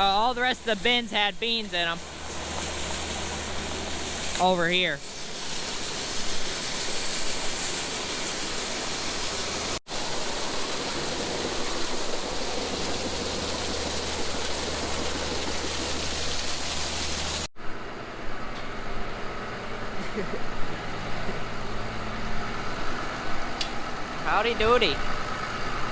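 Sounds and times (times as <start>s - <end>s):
engine hum: 9.0s - 25.9s.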